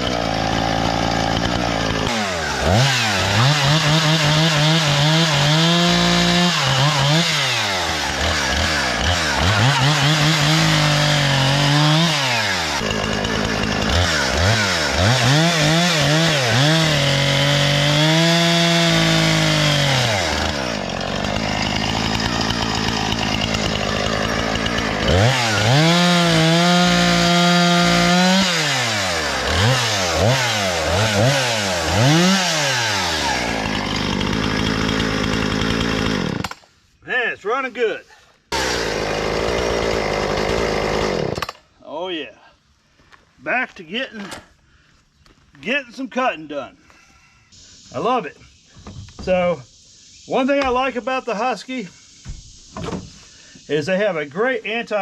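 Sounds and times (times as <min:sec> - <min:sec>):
chainsaw cutting wood: 0:00.0 - 0:36.8, 0:38.5 - 0:41.8.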